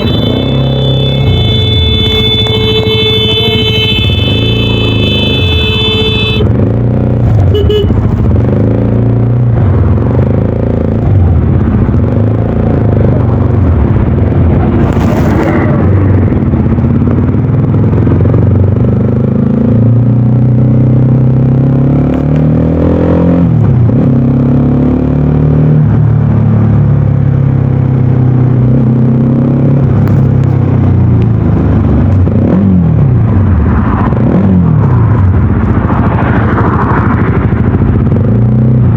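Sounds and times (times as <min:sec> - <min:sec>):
motorcycle engine running: 0:00.0 - 0:14.8, 0:29.9 - 0:38.9.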